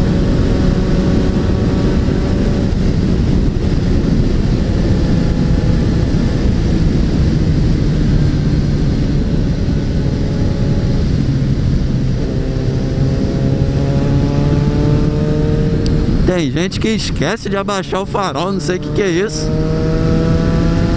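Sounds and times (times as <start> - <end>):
motorcycle engine running: 0.0 - 16.4
wind rush on microphone: 0.0 - 20.9.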